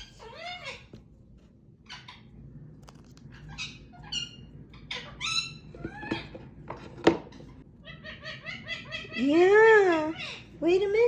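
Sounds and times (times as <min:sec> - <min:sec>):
parrot squeaky chirps: 0:00.0 - 0:00.9, 0:03.3 - 0:06.3.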